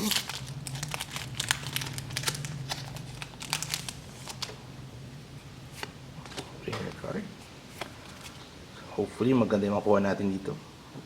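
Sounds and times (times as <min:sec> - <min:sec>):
foil wrapper crinkling: 0:00.0 - 0:04.5.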